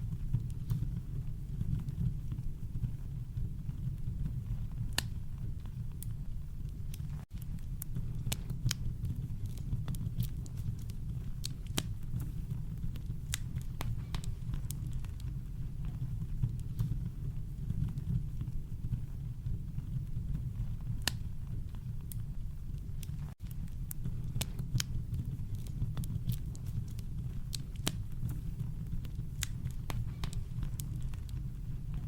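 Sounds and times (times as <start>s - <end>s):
campfire crackling: 0.0s - 32.0s.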